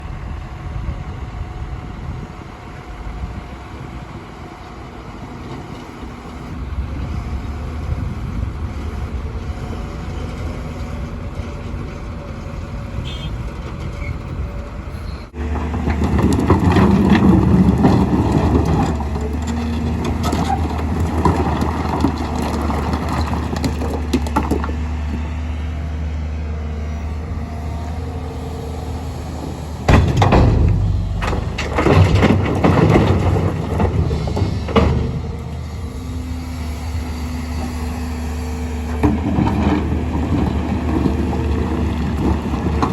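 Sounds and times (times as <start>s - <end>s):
excavator diesel engine running: 0.0s - 42.9s
heavy rumbling and clattering knocks: 15.3s - 25.6s, 27.0s - 42.9s.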